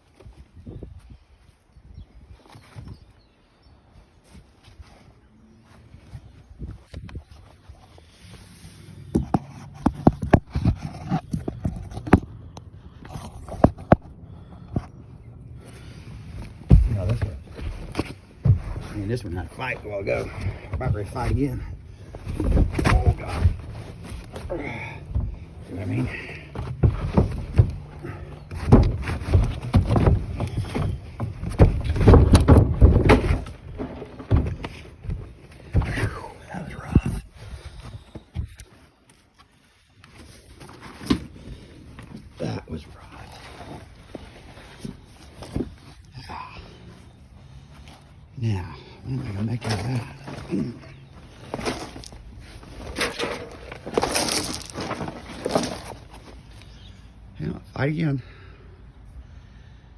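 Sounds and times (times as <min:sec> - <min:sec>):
log scraping: 0:06.2 - 0:15.0, 0:15.6 - 0:57.0
sharp irregular knocks and thumps: 0:09.1 - 0:14.1, 0:16.4 - 0:19.3, 0:20.1 - 0:36.2.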